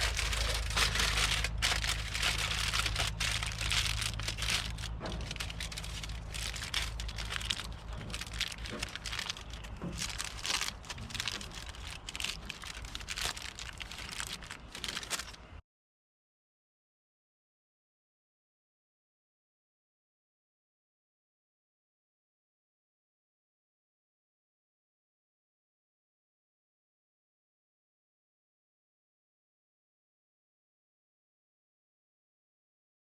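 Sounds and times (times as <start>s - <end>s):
rain pattering on tent fabric: 0.0s - 15.4s
steady low hum: 0.0s - 15.6s.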